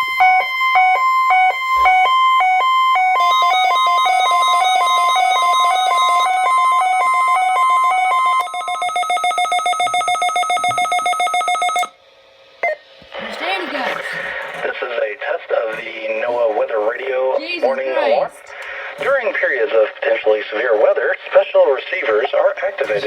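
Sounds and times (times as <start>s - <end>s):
two-tone alert alarm beeping: 0.0s - 12.0s.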